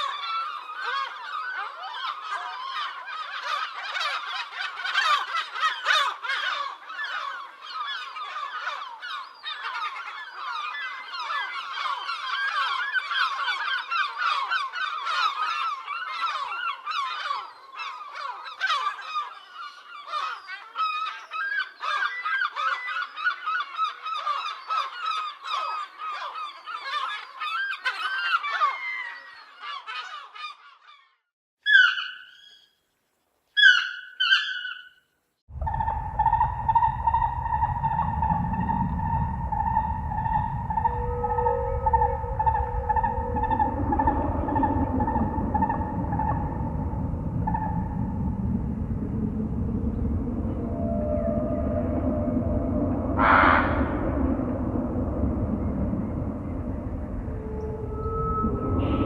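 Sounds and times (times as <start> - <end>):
flock of birds calling: 0.0 - 31.0, 50.0 - 59.0.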